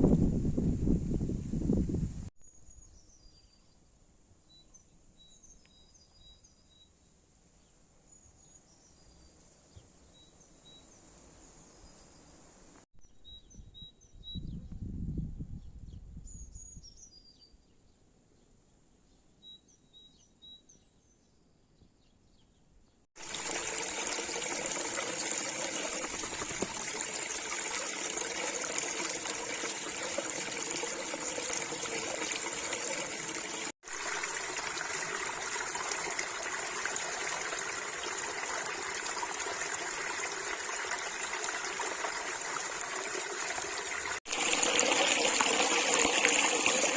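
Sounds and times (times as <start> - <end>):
stream flowing: 23.2 - 46.9.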